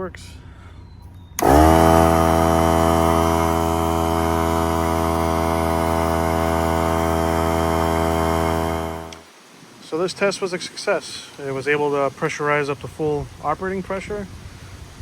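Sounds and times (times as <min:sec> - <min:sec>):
air compressor running: 0:01.4 - 0:09.2.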